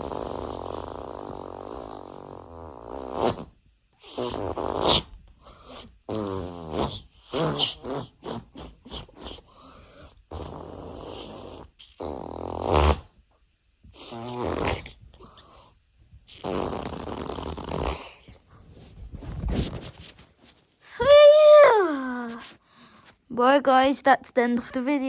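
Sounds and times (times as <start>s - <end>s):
fart noises: 0.0s - 13.2s, 13.9s - 20.2s.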